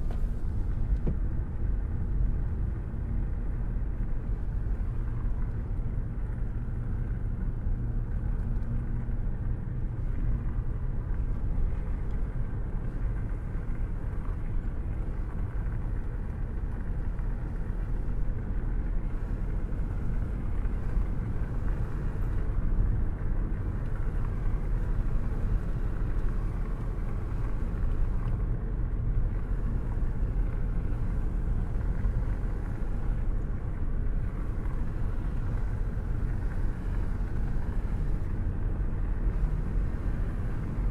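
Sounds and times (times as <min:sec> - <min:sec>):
heavy rain with deep rumble: 0:23.3 - 0:40.9.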